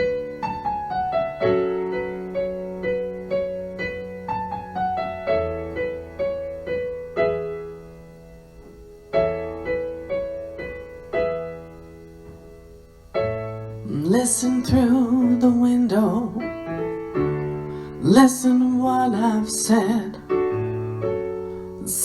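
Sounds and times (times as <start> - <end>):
electric piano melody: 0.0 - 22.0.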